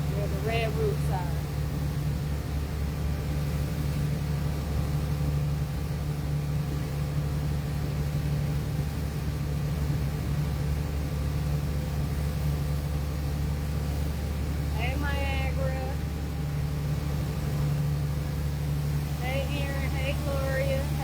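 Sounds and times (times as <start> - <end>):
boat engine humming: 0.0 - 21.0.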